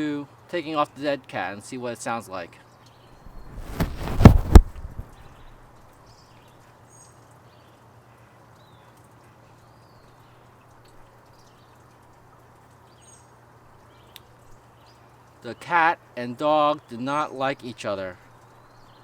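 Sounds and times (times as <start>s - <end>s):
windshield rustling against mic: 3.2s - 5.5s.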